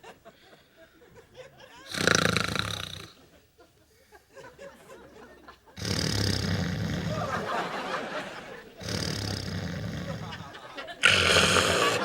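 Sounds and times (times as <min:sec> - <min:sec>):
man snoring: 0:01.9 - 0:03.2, 0:05.8 - 0:07.6, 0:08.8 - 0:12.0.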